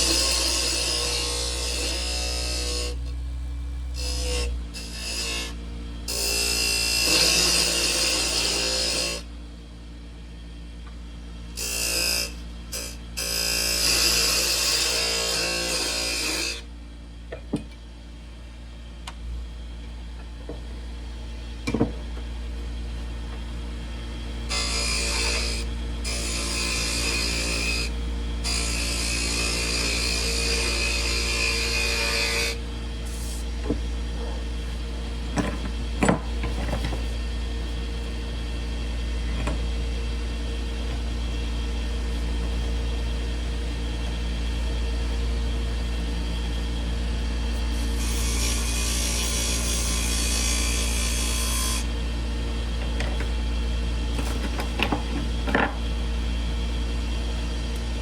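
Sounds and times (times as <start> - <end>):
wood lathe humming: 0.0 - 3.1, 4.0 - 9.2, 11.6 - 16.6, 24.4 - 36.6, 47.2 - 52.0.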